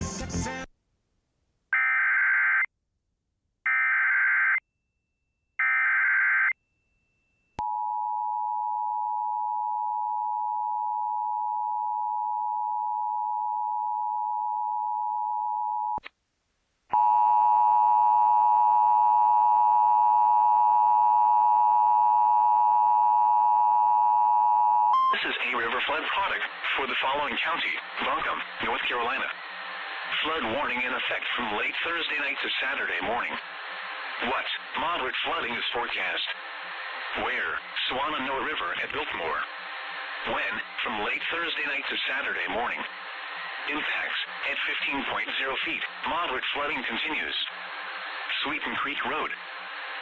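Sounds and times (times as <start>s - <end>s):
two-tone attention signal: 17.0s - 25.3s.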